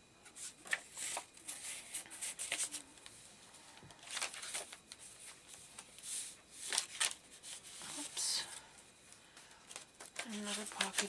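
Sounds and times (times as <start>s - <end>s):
paper rustling: 0.3s - 3.2s, 3.9s - 8.3s, 9.7s - 11.0s.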